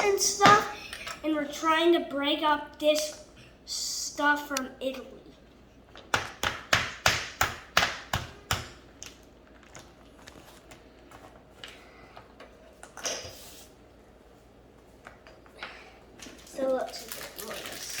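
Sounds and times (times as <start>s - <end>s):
sharp taps and knocks: 6.0s - 8.8s.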